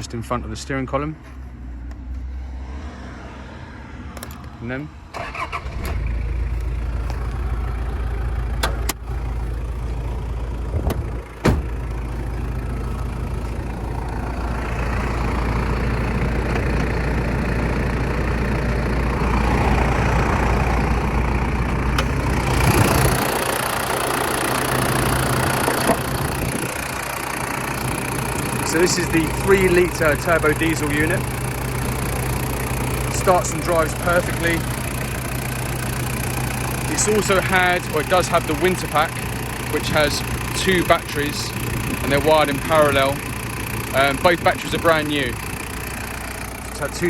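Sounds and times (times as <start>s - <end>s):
diesel engine starting and idling: 0.0s - 47.0s
sharp clunks: 10.8s - 11.8s.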